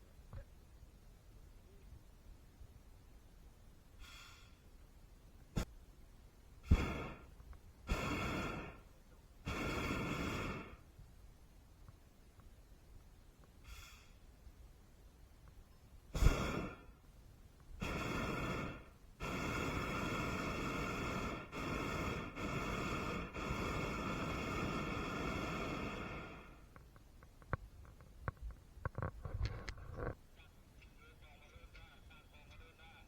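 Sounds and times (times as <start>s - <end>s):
propane burner firing: 16.1s - 16.9s.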